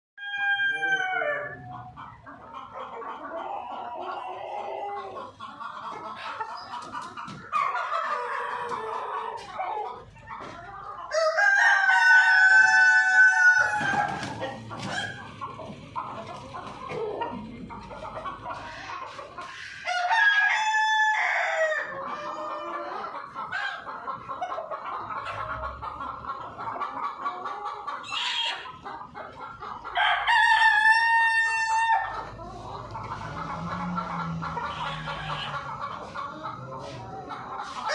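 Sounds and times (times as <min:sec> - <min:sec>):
rooster crowing: 0:00.2 - 0:01.6, 0:11.1 - 0:14.2, 0:19.9 - 0:21.9, 0:30.0 - 0:32.1
chickens clucking: 0:00.2 - 0:37.9.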